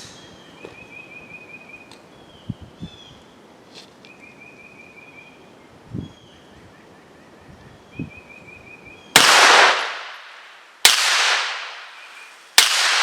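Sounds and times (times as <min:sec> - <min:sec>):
small birds calling: 0:00.0 - 0:09.2.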